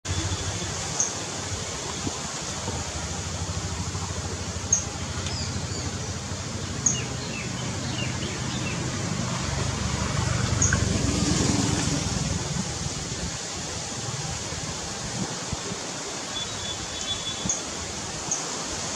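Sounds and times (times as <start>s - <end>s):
steady low rumble: 0.1s - 13.4s.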